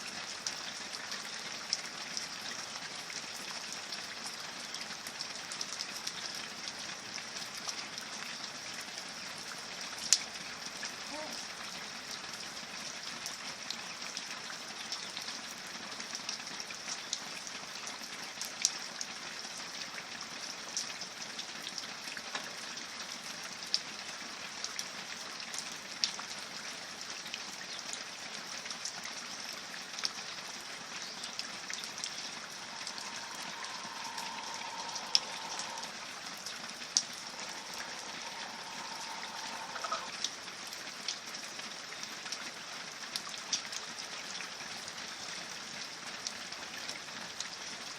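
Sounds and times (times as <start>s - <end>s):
steady rain hiss: 0.0s - 47.9s
single raindrops ticking: 31.3s - 36.0s.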